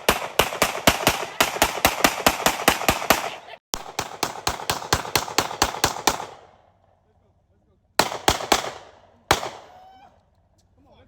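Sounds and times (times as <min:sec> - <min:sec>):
rapid sharp bangs: 0:00.0 - 0:06.5, 0:08.0 - 0:09.7.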